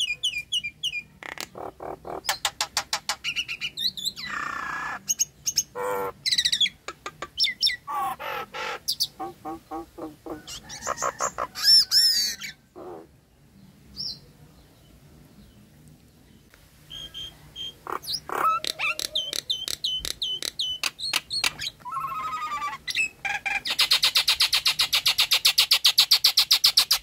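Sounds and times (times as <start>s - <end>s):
myna calling: 0.0s - 2.6s, 3.2s - 13.2s, 16.9s - 25.2s.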